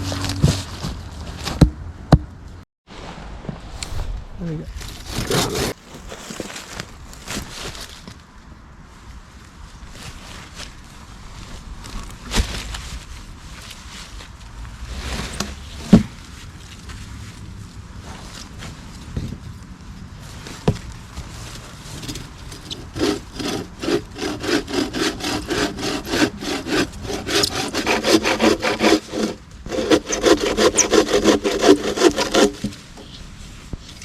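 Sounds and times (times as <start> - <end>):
hand saw cutting wood: 4.9 - 5.8, 22.0 - 33.2.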